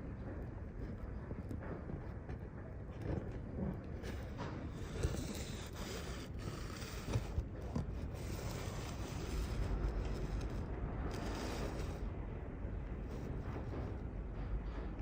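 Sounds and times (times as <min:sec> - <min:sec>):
sheet metal creaking and scraping: 0:03.6 - 0:15.0.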